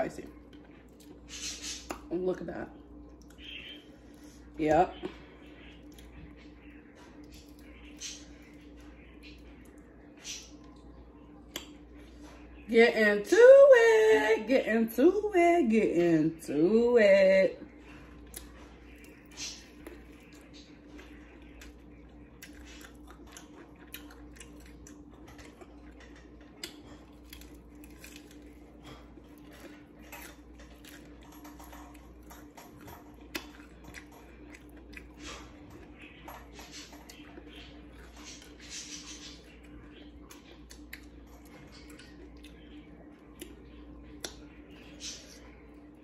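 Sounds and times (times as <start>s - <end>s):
faint steady hum: 0.0s - 46.0s
person chewing crunchy food: 0.3s - 2.1s, 17.7s - 45.9s.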